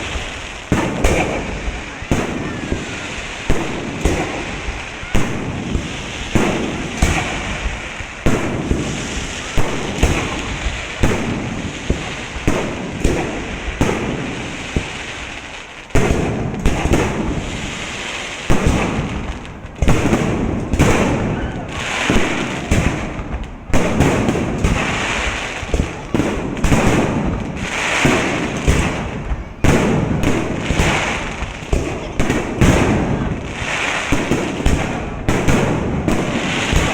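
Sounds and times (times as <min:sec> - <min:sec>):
firework crackling: 0:00.0 - 0:36.9.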